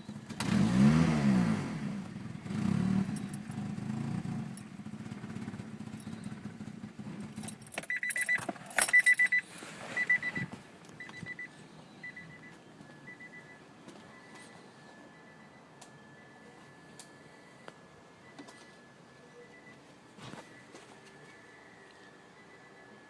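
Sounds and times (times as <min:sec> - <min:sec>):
car engine revving and idling: 0:00.0 - 0:07.8
keys jangling: 0:07.4 - 0:09.6
high beeping: 0:07.8 - 0:19.8.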